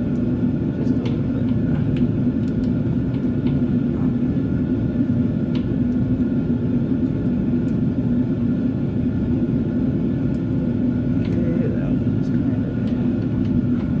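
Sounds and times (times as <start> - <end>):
heater droning: 0.0 - 14.0.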